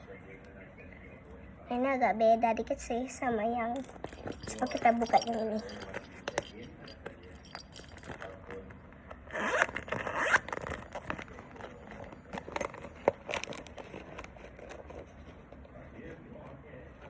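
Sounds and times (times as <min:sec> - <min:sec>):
package crinkling and clicking: 0:09.6 - 0:15.0.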